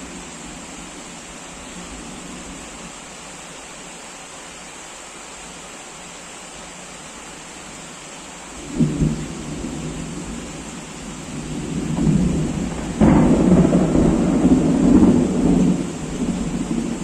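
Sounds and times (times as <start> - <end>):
heavy rain: 0.0 - 17.0
thunderclap with low rumble: 8.7 - 17.0.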